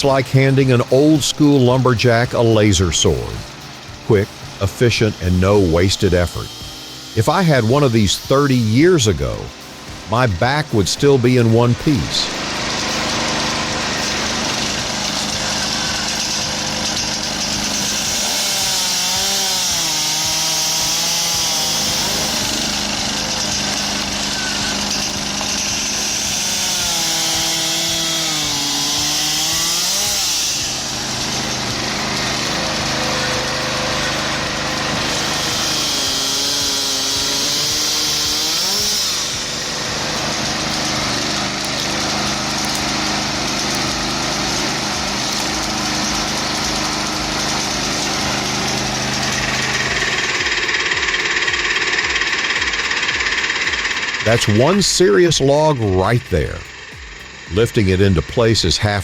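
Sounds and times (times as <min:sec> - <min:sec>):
harsh hiss of cutting wood: 0:00.0 - 0:58.3
engine running steadily: 0:00.0 - 0:59.0.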